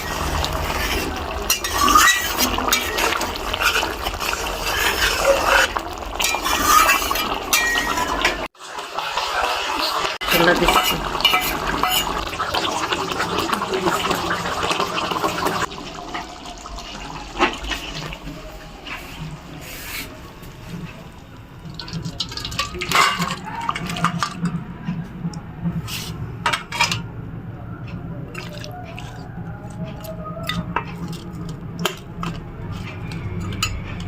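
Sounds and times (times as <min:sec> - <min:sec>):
utensils clinking and knocking: 0:00.0 - 0:08.5, 0:21.8 - 0:24.7, 0:26.5 - 0:27.1, 0:29.7 - 0:34.0
water pouring: 0:00.0 - 0:19.4, 0:20.6 - 0:24.6, 0:28.3 - 0:29.2.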